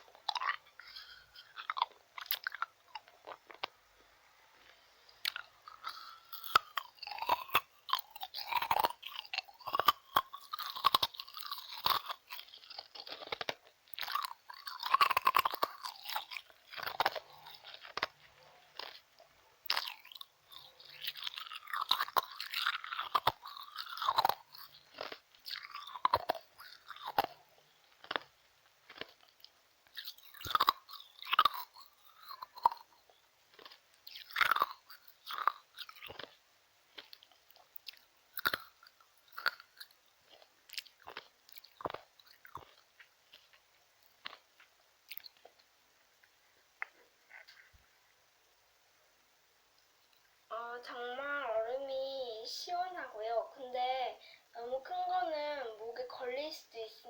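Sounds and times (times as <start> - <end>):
ice cubes crunched by teeth: 5.3 - 45.6.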